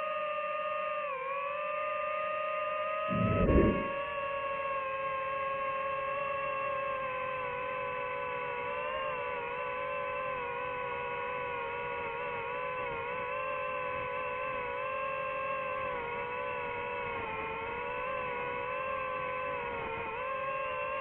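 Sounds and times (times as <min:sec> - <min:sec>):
drone propellers whining: 0:03.1 - 0:04.0.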